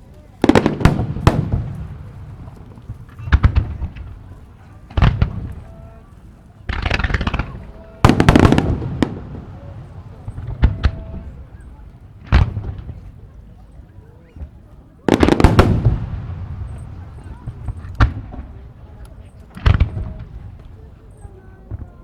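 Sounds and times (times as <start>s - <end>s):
fireworks crackling: 0.0s - 13.5s, 14.5s - 22.0s
fireworks booming: 0.4s - 13.3s, 15.1s - 22.0s
rumbling echo: 15.1s - 20.6s.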